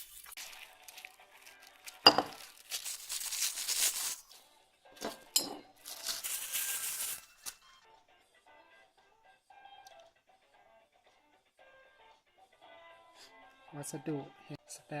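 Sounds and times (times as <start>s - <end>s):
plastic wrapping rustling and tearing: 0.0s - 4.3s, 5.8s - 7.6s
metal cocktail shaker clinking: 2.0s - 2.5s, 5.0s - 7.2s.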